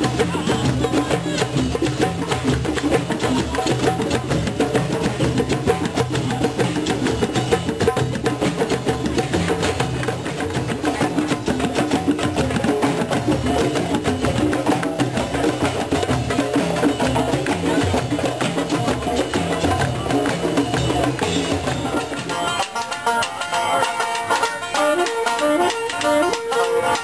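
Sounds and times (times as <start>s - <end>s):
music with quick percussion: 0.0s - 27.0s
plucked string music: 21.9s - 27.0s.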